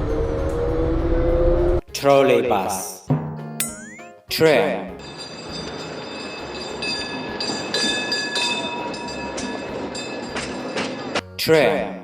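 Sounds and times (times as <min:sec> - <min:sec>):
tram rumbling on rails: 0:05.7 - 0:11.2.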